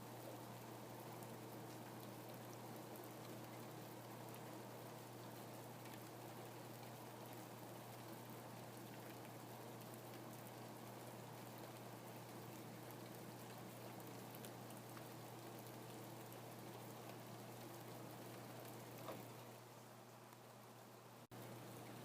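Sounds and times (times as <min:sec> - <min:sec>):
faint rain falling: 0:00.0 - 0:22.0
raindrops ticking: 0:00.5 - 0:19.6.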